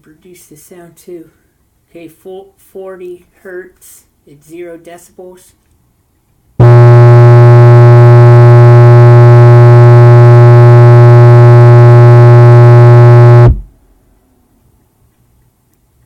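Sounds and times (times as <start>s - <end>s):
distorted low test tone drone: 6.6s - 13.7s.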